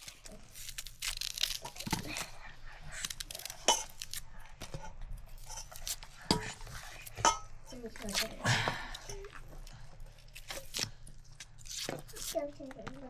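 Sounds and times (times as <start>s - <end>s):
rustling tearing and crunching: 0.0s - 13.0s.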